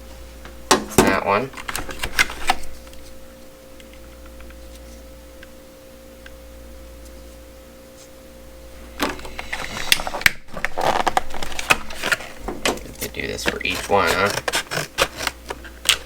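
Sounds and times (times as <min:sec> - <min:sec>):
faint electrical hum: 0:00.0 - 0:16.0
knife packaging clicks and rustles: 0:09.2 - 0:16.0.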